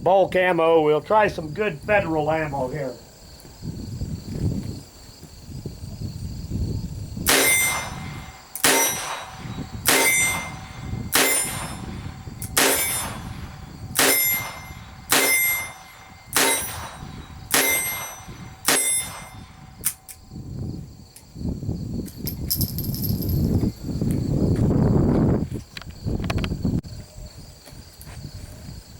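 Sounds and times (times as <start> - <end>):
insects trilling: 0.0 - 28.9
revolver gunshots: 7.3 - 20.0.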